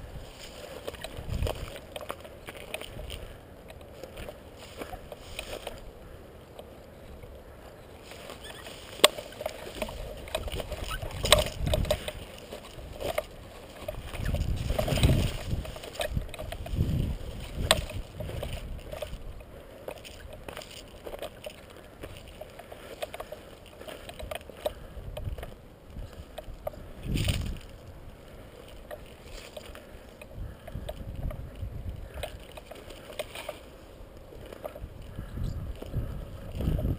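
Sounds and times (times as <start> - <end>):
camera handling rustling: 0.2 - 7.4, 8.0 - 36.9.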